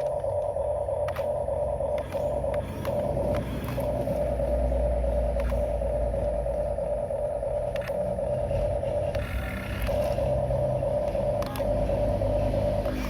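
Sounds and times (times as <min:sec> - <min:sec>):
electric motors whining: 0:00.0 - 0:13.0
sharp clicks: 0:11.0 - 0:11.9.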